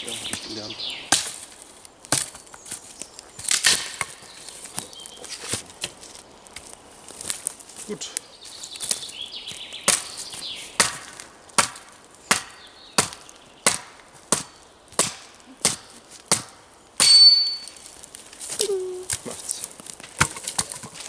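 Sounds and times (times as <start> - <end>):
wood being chopped with a blade: 1.1 - 6.0, 9.9 - 21.0
metallic ring: 17.0 - 17.8.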